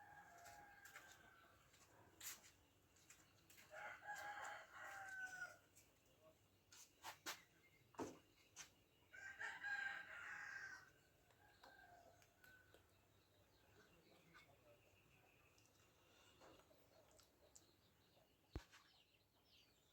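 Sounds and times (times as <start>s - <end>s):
faint rooster crowing: 0.0s - 1.9s, 3.6s - 5.7s, 9.1s - 12.8s.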